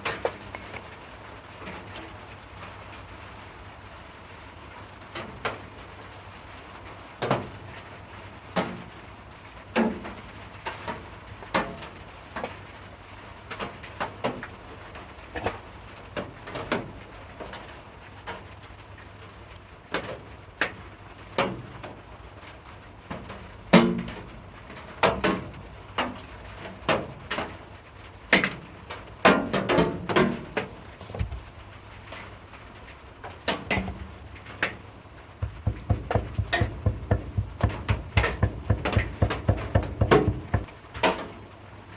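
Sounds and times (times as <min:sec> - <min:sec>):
hard objects knocking and clattering: 0:33.5 - 0:40.8.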